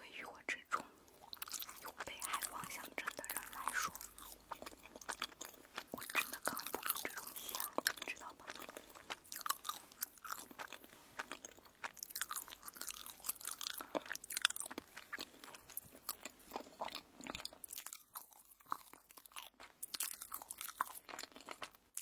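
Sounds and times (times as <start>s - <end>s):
wet mouth clicks: 0.4s - 9.2s
chewing crunchy toast: 0.8s - 22.0s.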